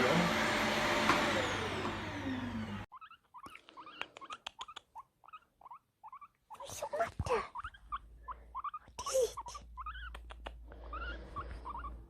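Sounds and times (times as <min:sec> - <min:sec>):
vacuum cleaner spinning down: 0:00.0 - 0:02.9.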